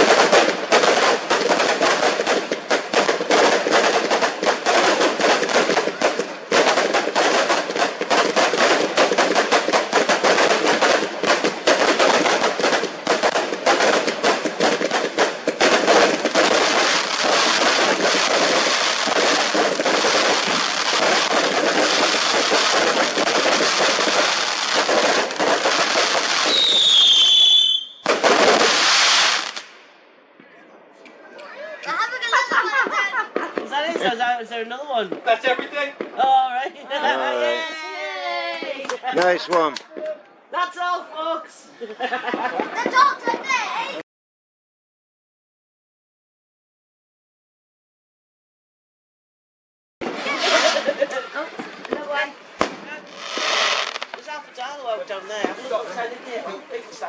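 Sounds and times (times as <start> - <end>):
whistling firework: 0.0 - 29.7, 50.0 - 51.2
fireworks crackling and banging: 0.0 - 44.0, 50.0 - 57.0.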